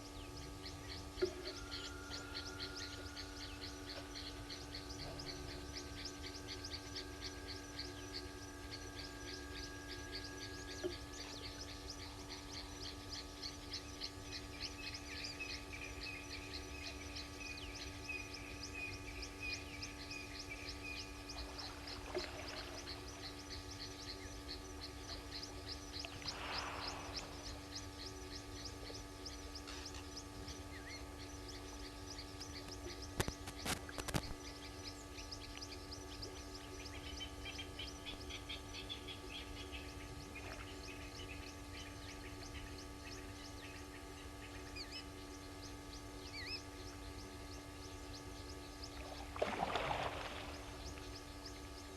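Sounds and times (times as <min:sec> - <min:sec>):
bird steady high notes: 0:00.0 - 0:48.8
birds rapid high chirps: 0:00.0 - 0:51.9
steady low hum: 0:00.0 - 0:51.9.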